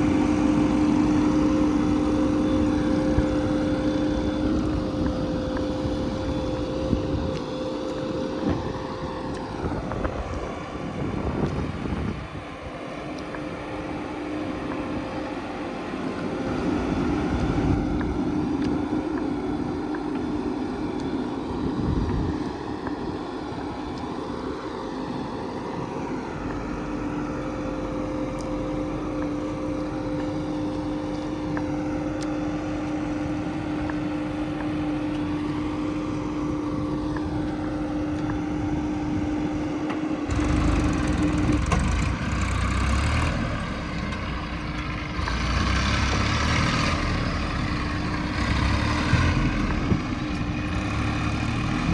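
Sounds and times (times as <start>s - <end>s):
diesel engine running: 0.0s - 51.9s.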